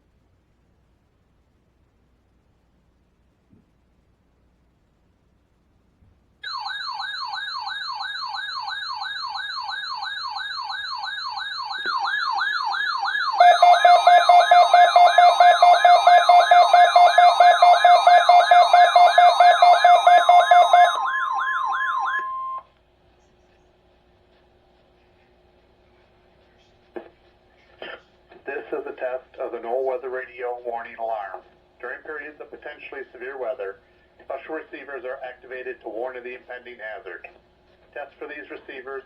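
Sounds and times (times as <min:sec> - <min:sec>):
electronic siren sweeping: 0:06.4 - 0:22.6
steady alarm tone: 0:06.4 - 0:22.7
loud beeping: 0:10.0 - 0:22.6.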